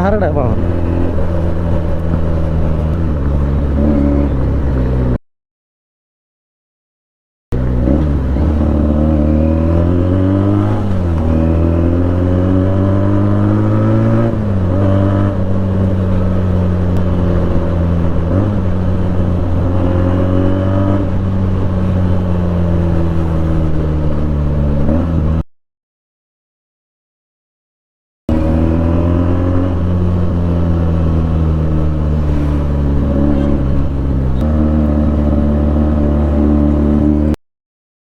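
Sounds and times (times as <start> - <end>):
motorcycle engine running: 0.0 - 5.2, 14.4 - 25.4, 28.3 - 37.4.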